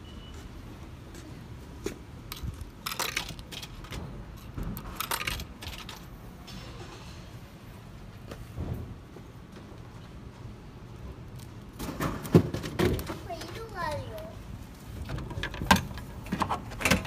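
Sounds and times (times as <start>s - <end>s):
coins clinking: 2.3s - 3.9s, 4.8s - 6.1s.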